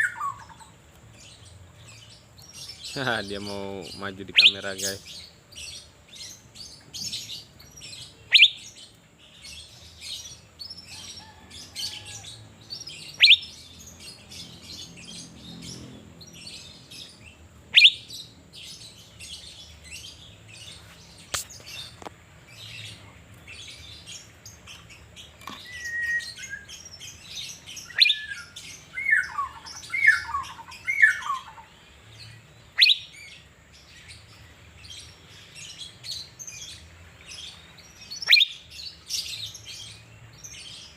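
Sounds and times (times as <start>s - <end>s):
bird whistling calls: 0.0s - 0.7s, 4.4s - 4.9s, 8.3s - 8.6s, 13.1s - 13.6s, 17.8s - 18.2s, 25.5s - 26.8s, 27.7s - 31.7s, 32.7s - 33.3s, 38.1s - 38.6s
faint bird chirping: 0.0s - 40.9s.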